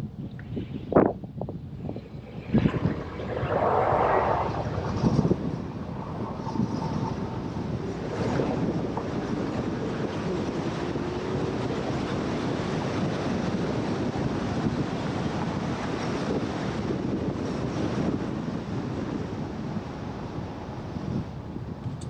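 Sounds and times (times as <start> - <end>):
wind buffeting microphone: 0.0 - 22.0
road traffic rumble: 1.6 - 13.4.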